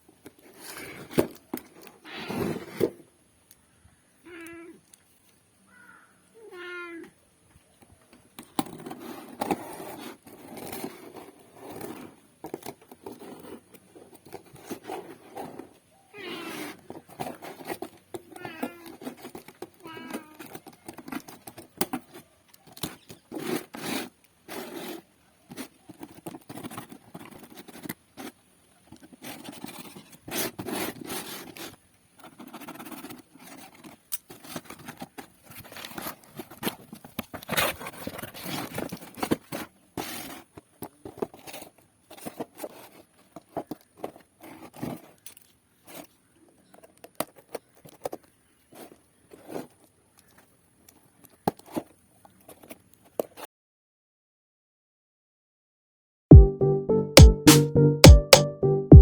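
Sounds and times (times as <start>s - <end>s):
packaging scraping and rustling: 0.2s - 3.0s, 8.4s - 50.6s.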